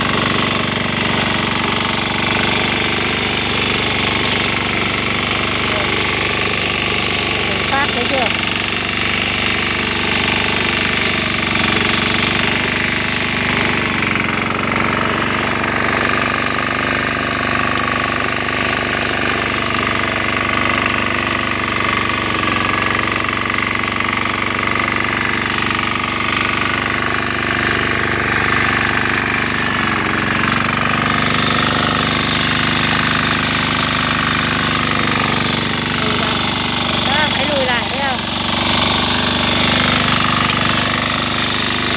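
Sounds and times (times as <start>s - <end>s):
lawn mower engine running: 0.0s - 41.9s.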